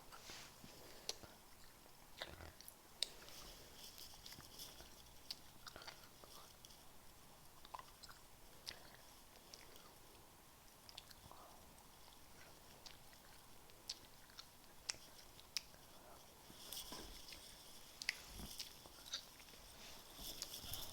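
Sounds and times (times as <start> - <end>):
chewing mouth clicks and smacks: 4.3 - 6.6, 7.6 - 9.9, 10.8 - 15.9, 17.9 - 19.6.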